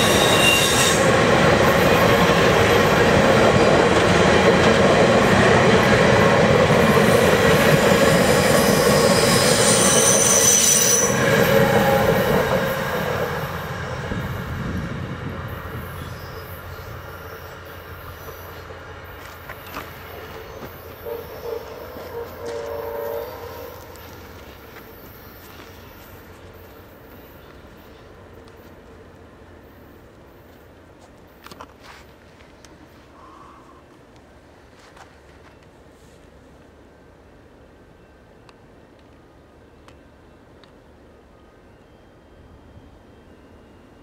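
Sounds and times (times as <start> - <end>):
train wheels on rails: 0.0 - 44.0.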